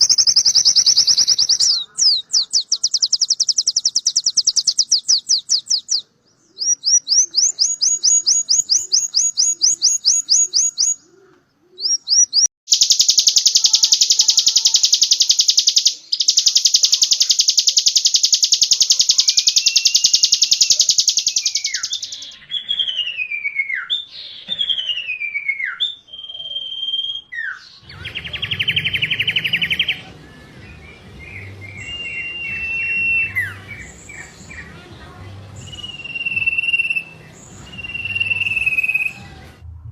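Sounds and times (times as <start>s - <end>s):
falling bird whistles: 0.0s - 6.0s, 11.8s - 30.0s, 31.7s - 34.3s, 35.6s - 39.2s
songbird trilling: 0.0s - 30.1s, 30.7s - 34.8s, 35.6s - 39.2s.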